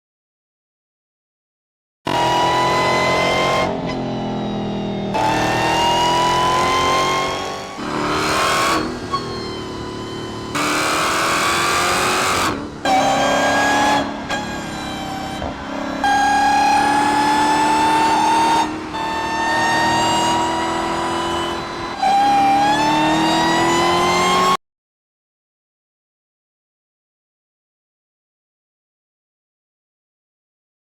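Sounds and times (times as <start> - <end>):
car engine accelerating hard: 2.1 - 24.6.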